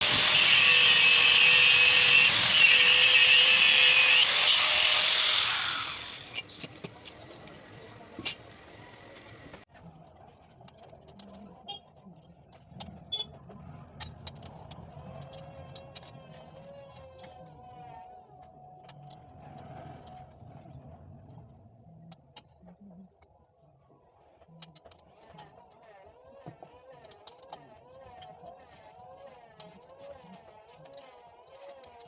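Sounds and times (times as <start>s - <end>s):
power tool on iron: 0.0s - 9.6s.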